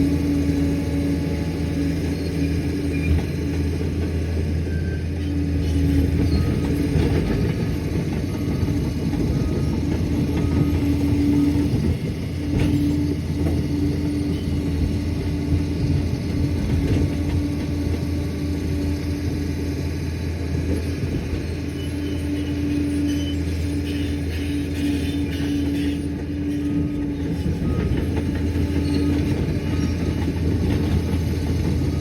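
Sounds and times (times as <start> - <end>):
bulldozer diesel engine droning: 0.0 - 32.0.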